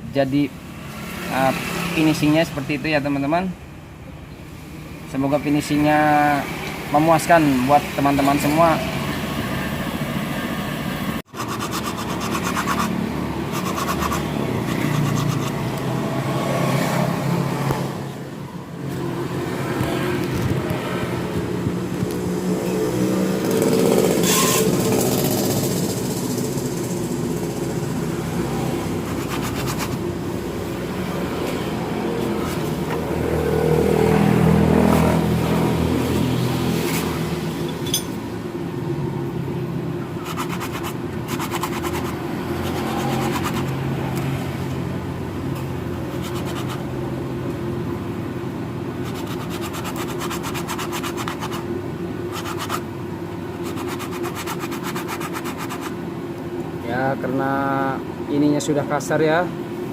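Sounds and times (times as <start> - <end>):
motor running steadily: 11.3 - 16.1.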